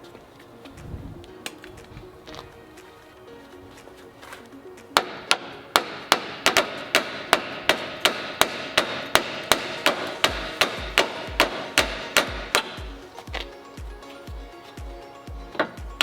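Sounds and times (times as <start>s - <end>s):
hammer striking metal: 5.0s - 13.0s.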